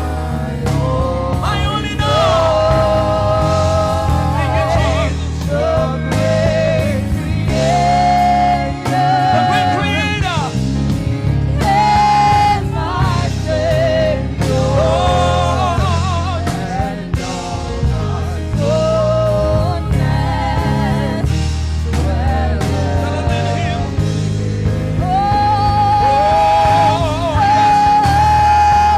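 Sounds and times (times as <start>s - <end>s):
person singing with vibrato: 0.0s - 10.5s, 21.9s - 28.9s
sustained accompaniment: 0.0s - 28.9s.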